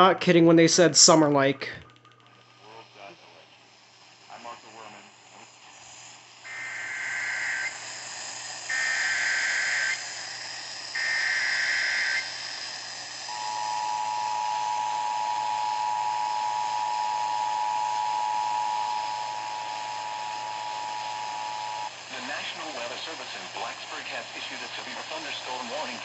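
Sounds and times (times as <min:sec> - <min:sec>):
radio hiss: 0:02.5 - 0:26.0
data tone bursts: 0:06.5 - 0:07.8, 0:08.7 - 0:10.2, 0:11.0 - 0:12.6, 0:13.3 - 0:21.9.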